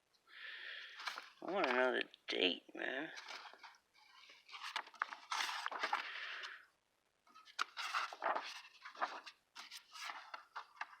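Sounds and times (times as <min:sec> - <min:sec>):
paper rustling and crinkling: 0:00.9 - 0:01.9, 0:03.1 - 0:06.6, 0:07.3 - 0:11.0.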